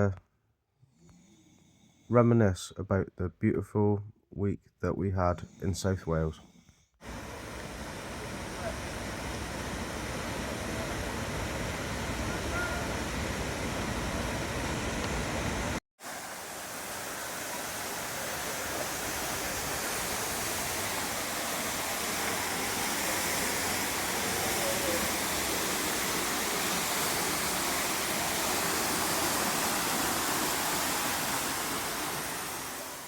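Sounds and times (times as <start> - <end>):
waterfall roaring: 7.1 - 33.0.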